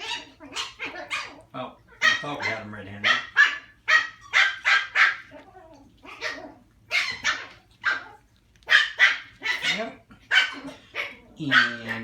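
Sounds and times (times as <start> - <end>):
puppy yapping: 0.0 - 12.0.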